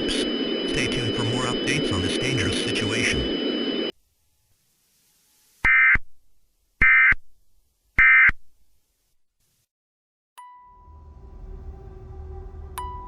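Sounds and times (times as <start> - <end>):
digital header tones: 0.0 - 3.9.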